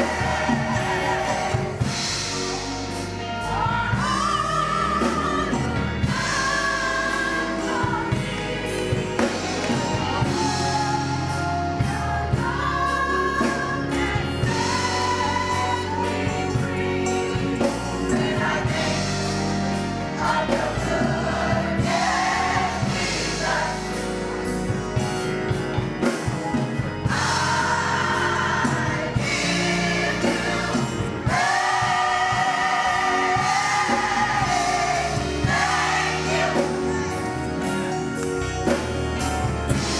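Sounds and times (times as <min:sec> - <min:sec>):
gospel choir singing: 0:00.0 - 0:39.9
instrumental accompaniment: 0:00.0 - 0:39.9.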